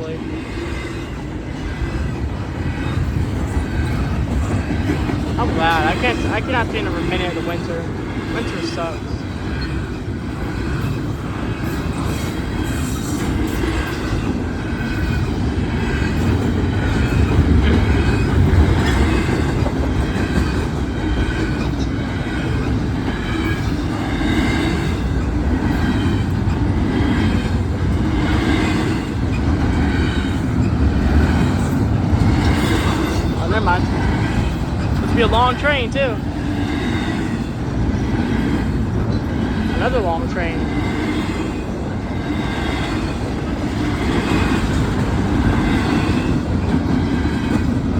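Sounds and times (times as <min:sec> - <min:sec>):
train wheels rumbling on rail: 0:00.0 - 0:47.9.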